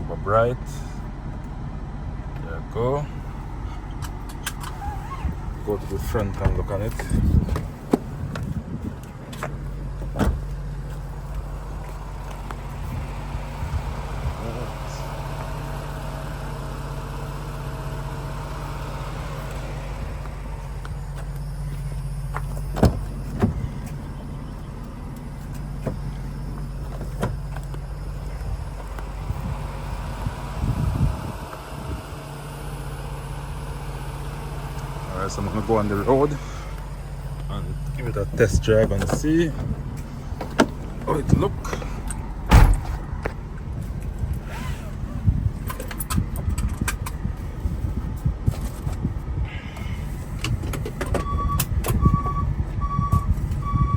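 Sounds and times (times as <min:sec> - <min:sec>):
van engine idling: 0:00.0 - 0:53.9
loud thump: 0:22.8 - 0:23.7, 0:42.5 - 0:43.0.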